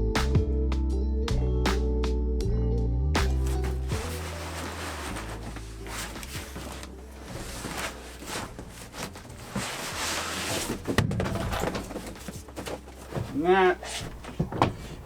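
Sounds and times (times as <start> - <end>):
plastic tank rustling and scraping: 3.4 - 15.0.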